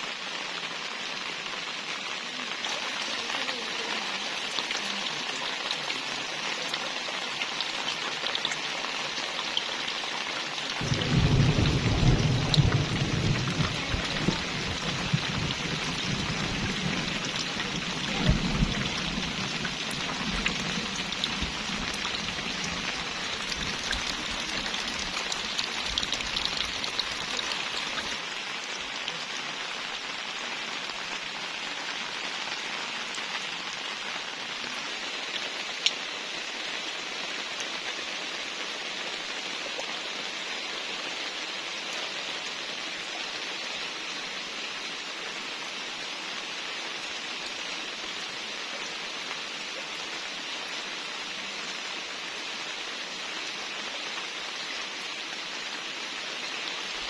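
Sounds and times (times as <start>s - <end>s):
steady rain: 0.0s - 57.0s
low rumble of thunder: 10.8s - 27.3s.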